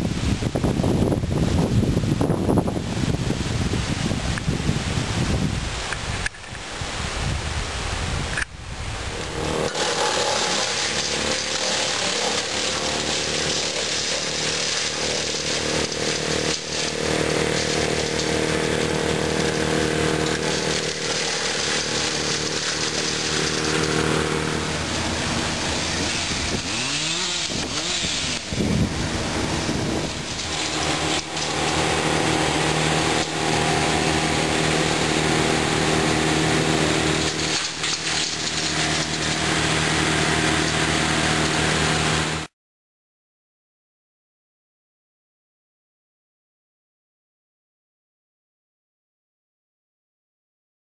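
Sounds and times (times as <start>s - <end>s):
chainsaw running: 8.9s - 42.5s
wood chipper engine running: 8.9s - 42.5s
engine revving: 9.0s - 42.5s.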